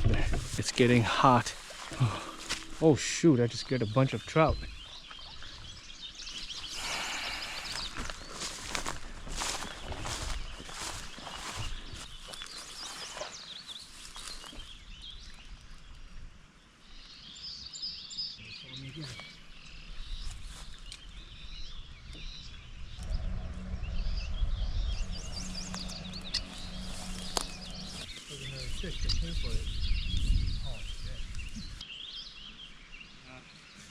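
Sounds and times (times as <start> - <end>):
stream: 0.0 - 7.2
birds chirping and singing: 0.0 - 15.5, 16.9 - 33.9
low rumble with steady hum: 22.9 - 30.1.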